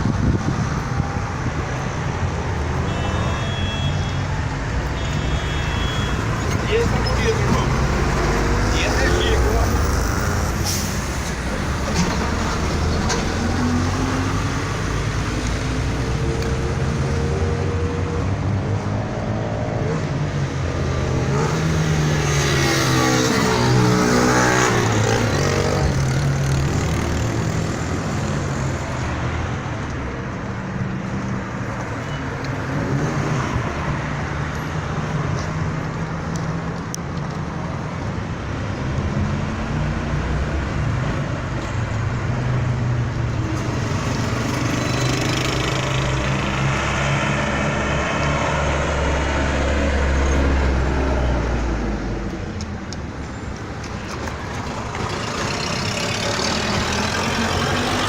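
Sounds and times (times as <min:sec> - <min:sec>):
traffic rumble: 0:00.0 - 0:58.0
vehicle passing close: 0:53.8 - 0:58.0.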